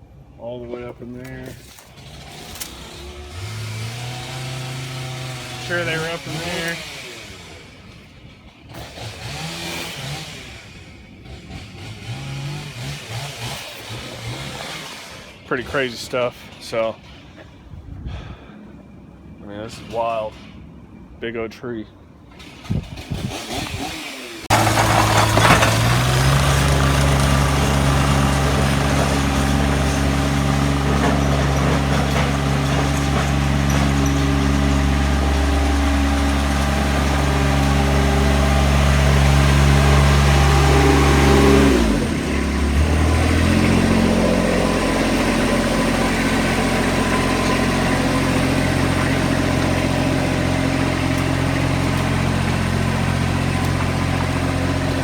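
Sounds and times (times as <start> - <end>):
large engine running: 2.0 - 12.9, 24.4 - 55.0.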